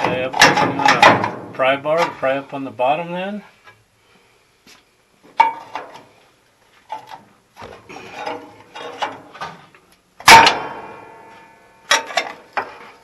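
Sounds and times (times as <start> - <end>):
loud metallic clang: 10.2 - 12.3.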